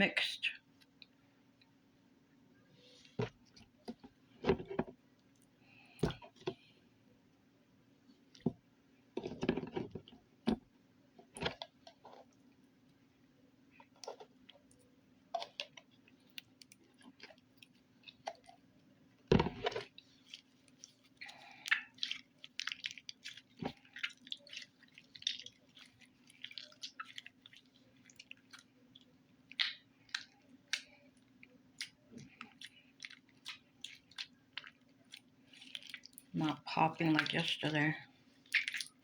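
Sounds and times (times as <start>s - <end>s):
faint steady hum: 0.0s - 39.0s
slime squishing: 13.8s - 39.0s.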